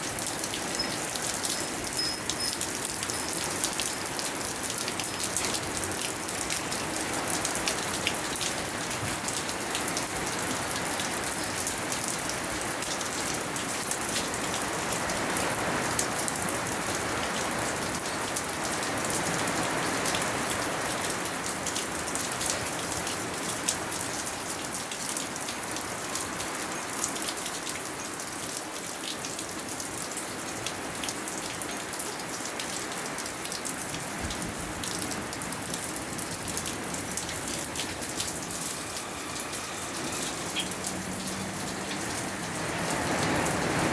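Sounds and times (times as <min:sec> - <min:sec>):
steady rainfall: 0:00.0 - 0:43.9.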